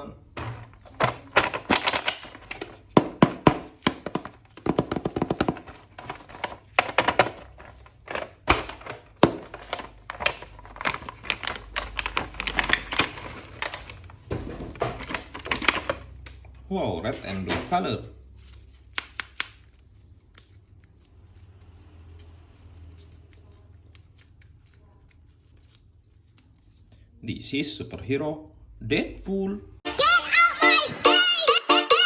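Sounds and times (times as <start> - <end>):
packaging rustling: 0.4 - 16.4.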